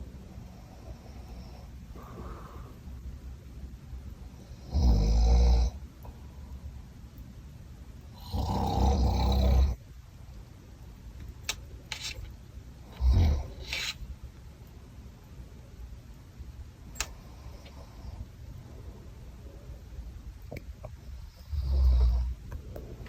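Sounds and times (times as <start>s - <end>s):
loud snoring: 4.5s - 5.8s, 8.2s - 9.8s, 13.0s - 13.7s, 21.4s - 22.4s.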